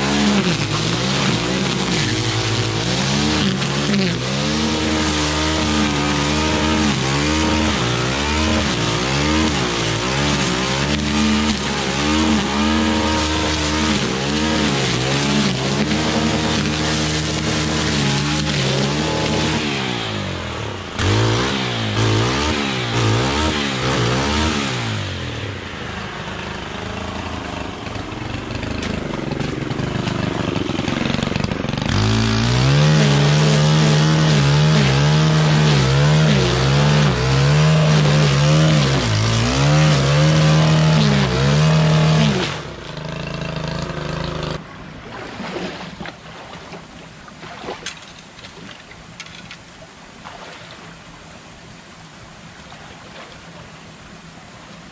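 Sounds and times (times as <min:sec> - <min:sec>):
brush cutter engine revving: 0:00.0 - 0:44.7
running water: 0:44.7 - 0:54.9.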